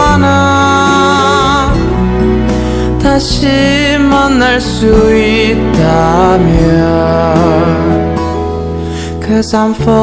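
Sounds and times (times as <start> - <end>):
ballad with singing: 0.0 - 10.0.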